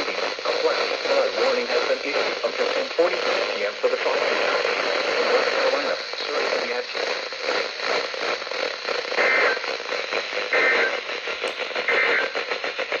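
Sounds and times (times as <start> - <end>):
radio static: 0.0 - 13.0.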